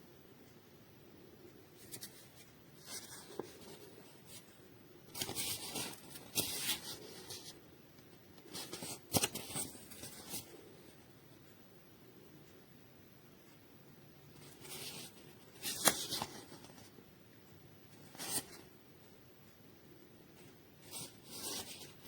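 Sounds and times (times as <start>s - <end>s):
rustling and scraping handling noise: 1.6s - 11.1s, 14.3s - 17.0s, 17.9s - 18.8s, 20.3s - 22.0s.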